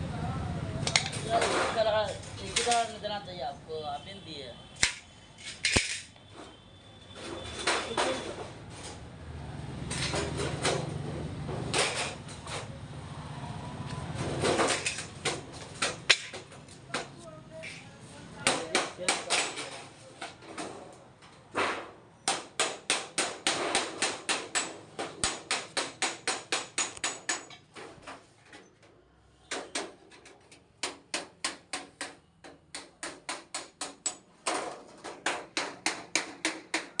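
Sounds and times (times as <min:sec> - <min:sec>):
rapid hammer strikes: 0:14.2 - 0:17.2, 0:18.4 - 0:19.8, 0:21.5 - 0:27.9, 0:30.8 - 0:37.0.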